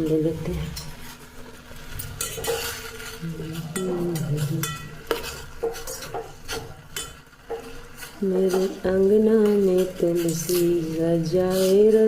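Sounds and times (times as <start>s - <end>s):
water boiling: 0.0s - 12.0s
spoon clinking against pan: 4.6s - 7.7s.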